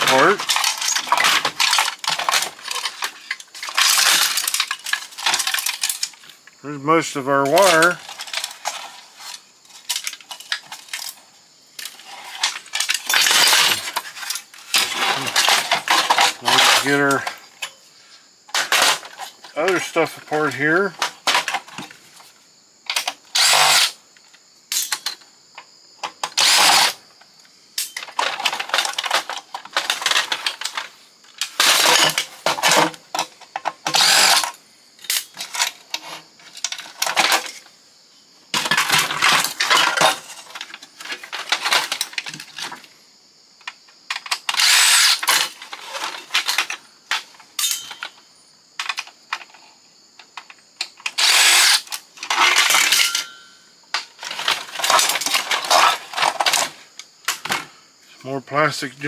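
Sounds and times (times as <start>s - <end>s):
clatter of loose parts: 0.0s - 6.4s, 7.4s - 17.8s, 18.5s - 22.3s, 22.9s - 24.0s, 24.7s - 25.3s, 26.0s - 27.0s, 27.8s - 37.7s, 38.5s - 42.9s, 43.6s - 49.6s, 50.2s - 57.7s
power drill bursts: 51.2s - 51.9s.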